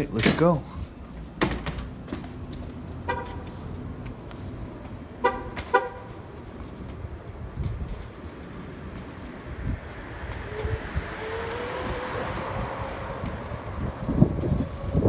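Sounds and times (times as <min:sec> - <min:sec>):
city street noise: 0:00.0 - 0:15.0
car horn toots: 0:03.1 - 0:03.4, 0:05.2 - 0:06.2.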